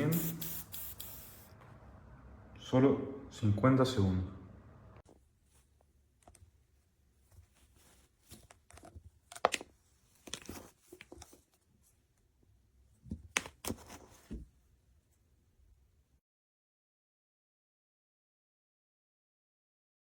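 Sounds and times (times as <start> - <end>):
handling rustles and knocks: 5.1 - 12.0.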